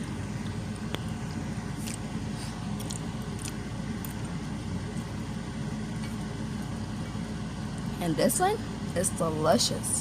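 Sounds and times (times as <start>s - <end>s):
person chewing crispy food: 0.0s - 7.9s
steady low hum: 0.0s - 10.0s.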